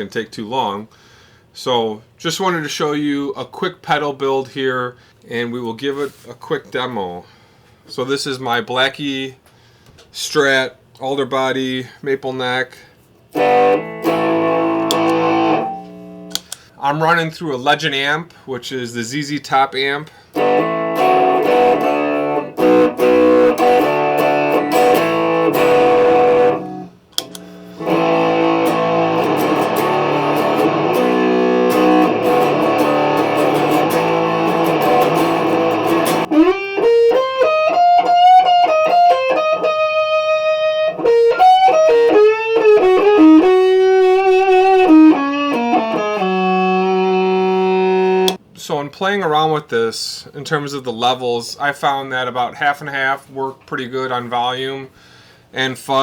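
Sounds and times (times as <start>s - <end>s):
fuzzy electric guitar chords: 13.3s - 16.4s, 20.3s - 48.4s
electric guitar lead lines: 13.3s - 16.5s, 20.3s - 48.4s.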